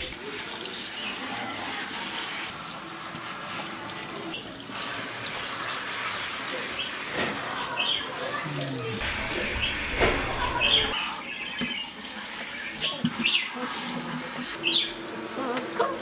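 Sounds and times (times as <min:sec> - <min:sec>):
water running from a tap: 0:00.0 - 0:11.0.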